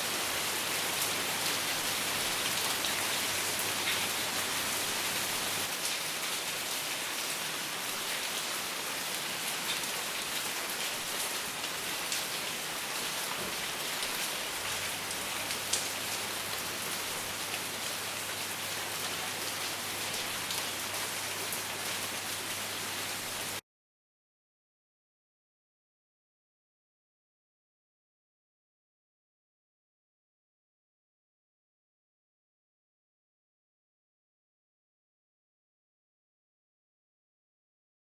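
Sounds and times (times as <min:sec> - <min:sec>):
steady rain hiss: 0:00.0 - 0:23.6.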